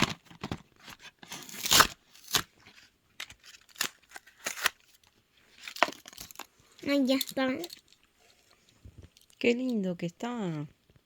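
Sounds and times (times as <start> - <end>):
card and plastic tearing: 0.0 - 6.5.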